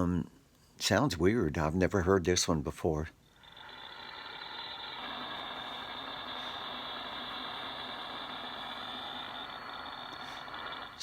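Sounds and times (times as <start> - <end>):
radio crackling buzz: 5.0 - 11.0.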